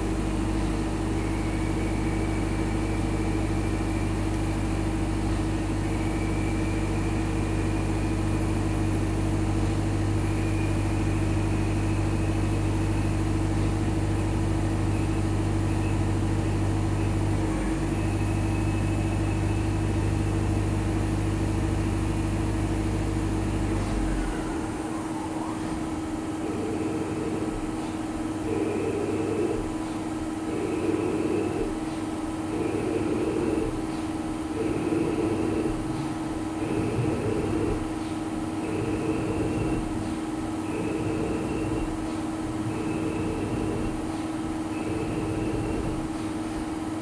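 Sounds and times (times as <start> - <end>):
faint high whine: 0.0 - 29.7, 44.7 - 46.1
metal-cutting machine motor hum: 22.4 - 46.2.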